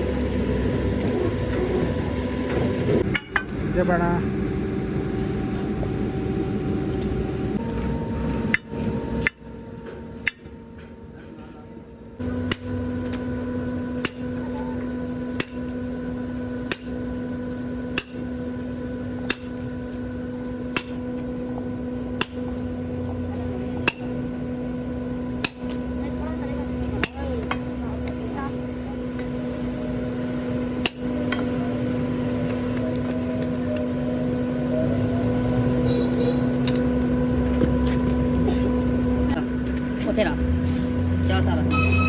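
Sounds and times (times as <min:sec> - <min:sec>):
steady hum: 0:00.0 - 0:42.0.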